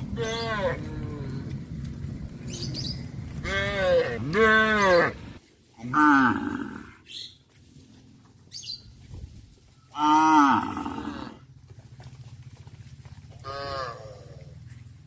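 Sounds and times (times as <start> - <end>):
low pulsing hum: 0.0 - 5.4
cow mooing: 3.4 - 5.2, 9.9 - 11.4, 13.4 - 14.5.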